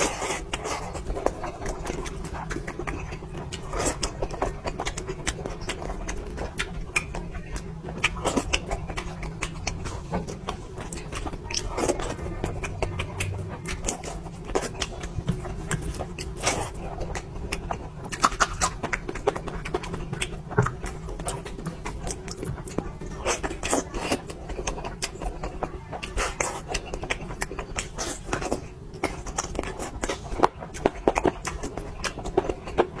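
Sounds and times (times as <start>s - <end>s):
mouth chewing food: 0.0s - 33.0s
steady low hum: 0.0s - 33.0s.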